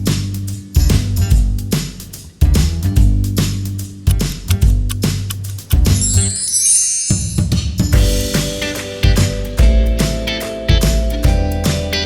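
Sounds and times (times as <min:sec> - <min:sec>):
drums: 0:00.0 - 0:12.0
plucked guitar: 0:08.0 - 0:12.0.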